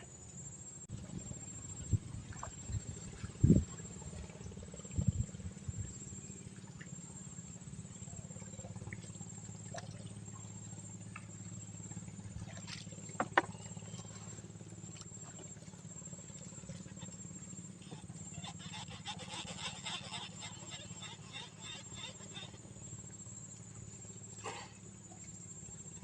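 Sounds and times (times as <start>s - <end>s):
insect trill: 0.0s - 26.0s
small knocks and clicks: 13.1s - 13.6s.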